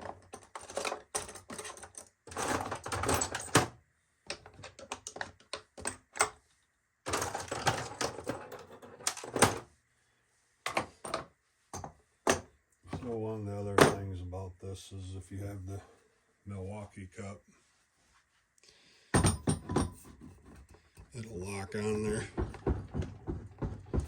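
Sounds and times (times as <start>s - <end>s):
hand tools clattering in plastic drawer: 0.0s - 3.7s, 7.1s - 9.6s.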